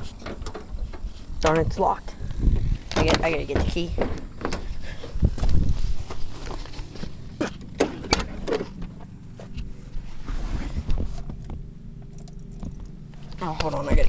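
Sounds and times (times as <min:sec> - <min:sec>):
sharp clicks and knocks: 0:00.0 - 0:01.7.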